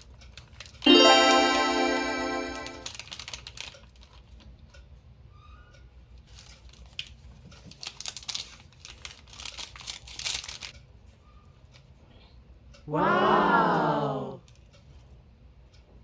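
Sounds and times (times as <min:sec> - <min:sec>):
candy wrappers crinkling: 0:02.8 - 0:04.2, 0:06.7 - 0:10.7.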